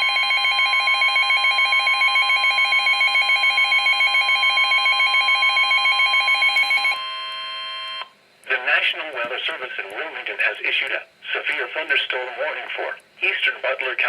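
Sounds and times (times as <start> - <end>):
rapid electronic warbling alarm: 0.0 - 8.0.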